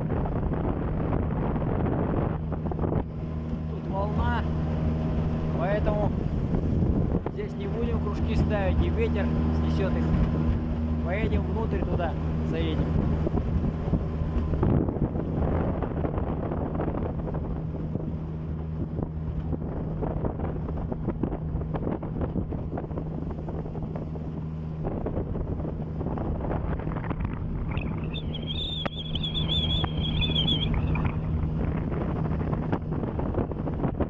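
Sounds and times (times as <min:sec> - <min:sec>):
outboard motor running: 0:00.0 - 0:34.0
wind buffeting microphone: 0:00.0 - 0:34.0
high wavering whistle: 0:27.7 - 0:31.2.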